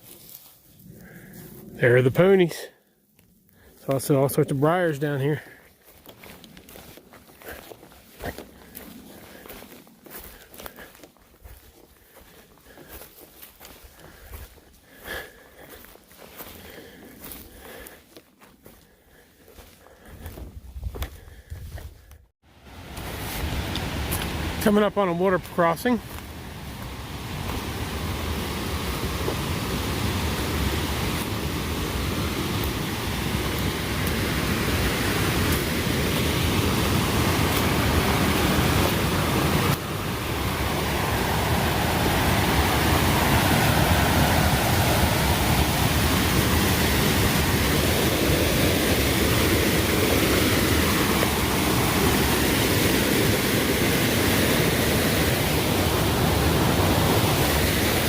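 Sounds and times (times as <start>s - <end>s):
mountain stream rushing: 22.5s - 58.0s.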